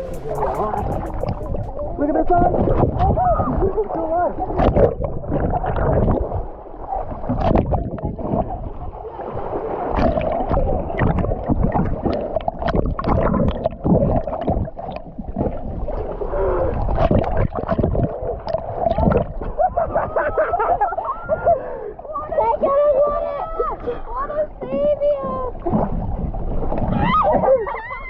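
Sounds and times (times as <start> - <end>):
knocks and thumps: 0.0 - 1.8
voices: 0.0 - 4.2
water splashing around boat: 0.0 - 28.0
wind: 0.0 - 28.0.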